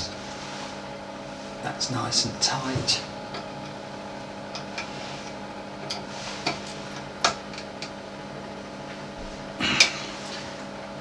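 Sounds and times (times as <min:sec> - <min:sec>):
extractor fan humming: 0:00.0 - 0:11.0.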